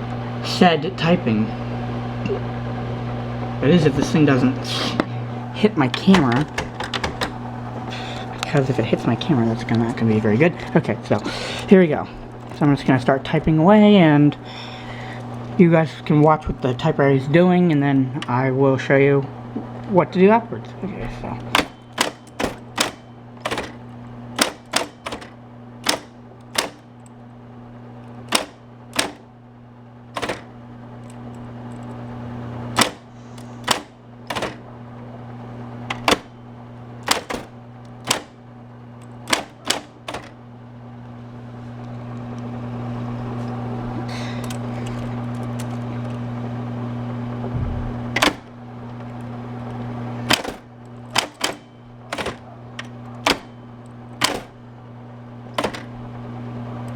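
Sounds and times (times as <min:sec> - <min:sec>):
typewriter motor humming: 0:03.6 - 0:56.9
typewriter typebars clicking: 0:05.9 - 0:07.4, 0:21.1 - 0:27.1, 0:28.2 - 0:29.3, 0:30.1 - 0:31.9, 0:32.7 - 0:34.7, 0:35.9 - 0:36.4, 0:37.0 - 0:38.4, 0:39.0 - 0:40.4, 0:48.2 - 0:53.6, 0:54.2 - 0:54.6, 0:55.5 - 0:56.0.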